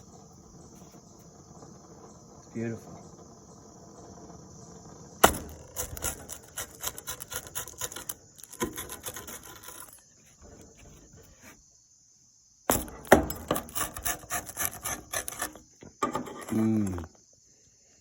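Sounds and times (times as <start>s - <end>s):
crickets chirping: 0.0s - 18.0s
crust cracking: 0.3s - 10.0s
knife scraping crunchy crust: 5.2s - 11.6s, 12.7s - 17.1s.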